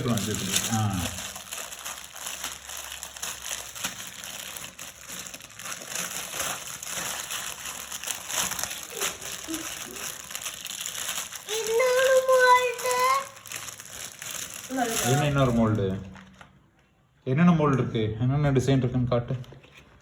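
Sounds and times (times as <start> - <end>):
plastic packaging crinkling: 0.0 - 16.8.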